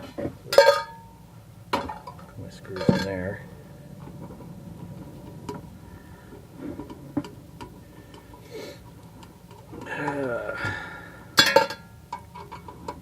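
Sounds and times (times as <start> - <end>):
light handling noise: 1.7 - 10.8.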